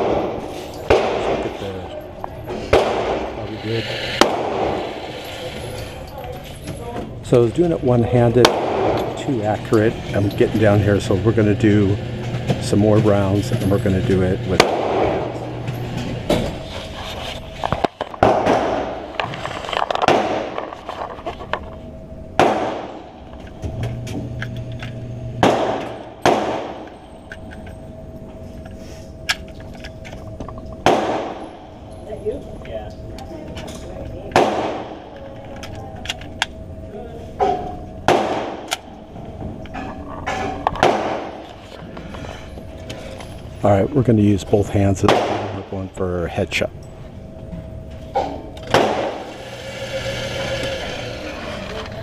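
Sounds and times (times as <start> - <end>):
loud gunshots with echo: 0.0 - 1.6, 2.7 - 3.4, 4.2 - 4.8, 8.4 - 9.2, 14.6 - 15.4, 20.1 - 20.6, 22.4 - 23.1, 25.4 - 26.9, 30.8 - 31.6, 34.3 - 35.0, 38.0 - 38.7, 40.8 - 41.4.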